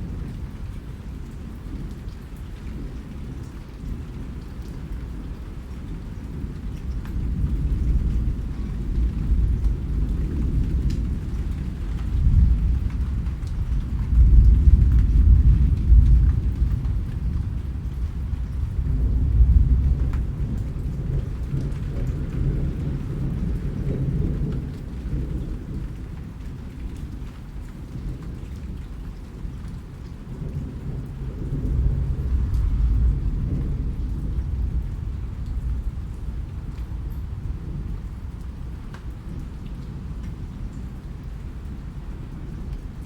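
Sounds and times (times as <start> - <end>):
rolling thunder: 6.4 - 26.5, 30.2 - 43.0
rain hissing: 30.6 - 38.8.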